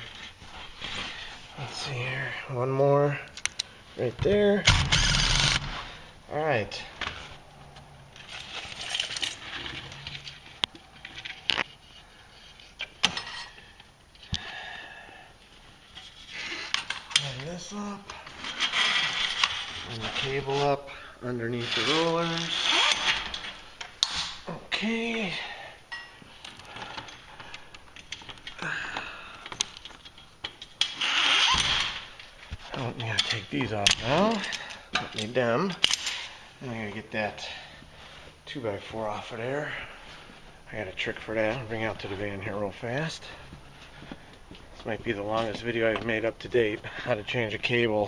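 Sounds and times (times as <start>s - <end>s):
light scraping and rubbing: 17.2s - 23.6s.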